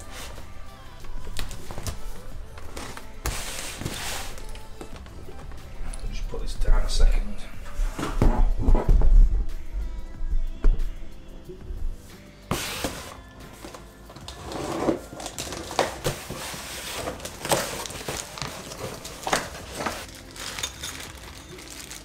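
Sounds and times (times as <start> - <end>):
packaging rustling: 14.9 - 22.0
metal parts knocking and clinking: 20.3 - 21.8.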